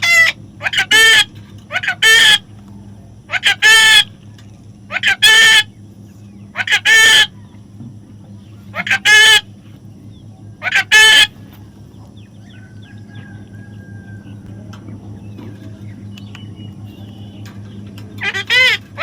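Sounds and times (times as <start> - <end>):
parrot squawking: 0.0 - 2.5, 3.3 - 4.2, 4.9 - 5.7, 6.5 - 7.4, 8.7 - 9.5, 10.6 - 11.4, 18.2 - 19.0
low hum: 0.0 - 19.0.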